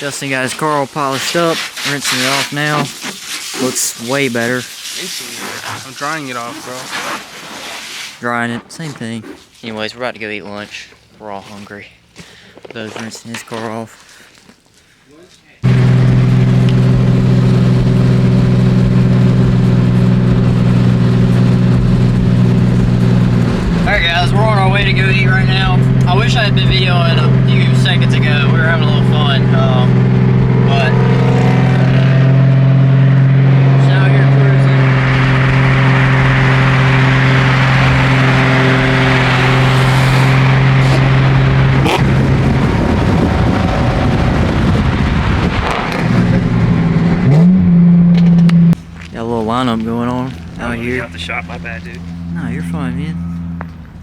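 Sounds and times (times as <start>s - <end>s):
car engine running steadily: 15.6s - 54.0s.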